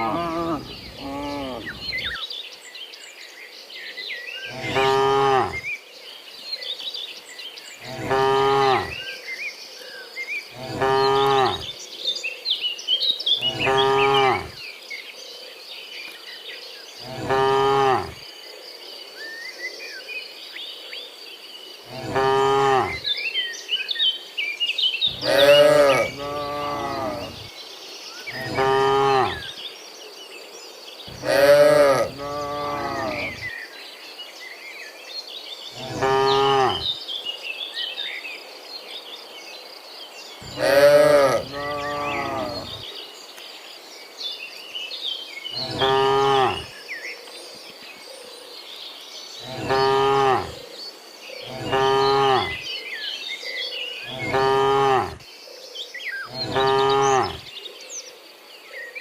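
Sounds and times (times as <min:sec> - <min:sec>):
cows mooing: 0:00.0 - 0:02.2, 0:04.5 - 0:05.6, 0:07.8 - 0:09.0, 0:10.6 - 0:11.7, 0:13.4 - 0:14.6, 0:17.1 - 0:18.2, 0:21.9 - 0:23.0, 0:25.1 - 0:27.5, 0:28.4 - 0:29.4, 0:31.1 - 0:33.4, 0:35.8 - 0:36.9, 0:40.4 - 0:42.8, 0:45.6 - 0:46.7, 0:49.5 - 0:50.6, 0:51.5 - 0:52.6, 0:54.1 - 0:55.2, 0:56.3 - 0:57.4
faint high chirping: 0:00.0 - 0:02.2, 0:40.4 - 0:42.8.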